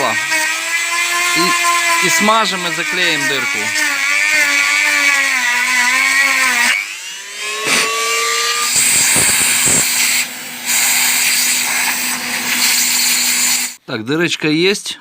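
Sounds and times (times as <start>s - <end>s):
electric drill whining: 0.0s - 13.8s
vacuum cleaner running: 5.9s - 13.8s.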